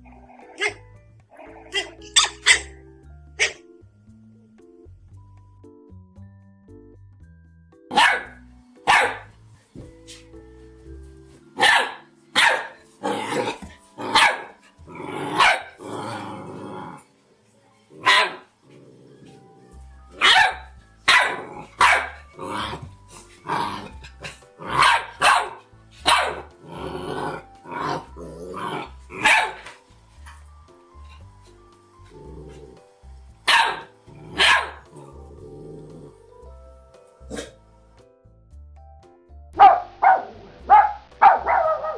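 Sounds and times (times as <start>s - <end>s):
soft background music: 0.0s - 41.9s
dog barking: 0.2s - 0.8s, 1.4s - 2.7s, 3.4s - 3.6s, 7.9s - 9.3s, 11.6s - 14.6s, 15.3s - 15.8s, 18.0s - 18.5s, 20.2s - 22.2s, 24.2s - 26.5s, 29.2s - 29.8s, 33.5s - 34.8s, 37.3s - 37.6s, 39.6s - 41.9s.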